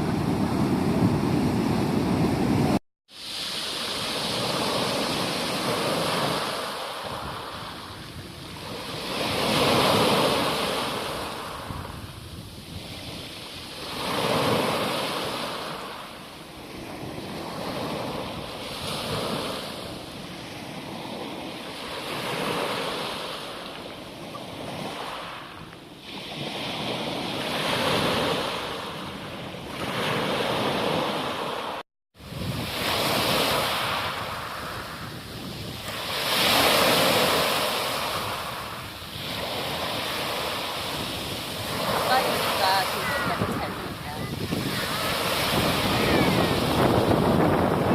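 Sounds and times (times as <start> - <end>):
sea waves breaking on beach: 0.0 - 47.9
wind buffeting microphone: 7.0 - 14.6, 32.2 - 47.9.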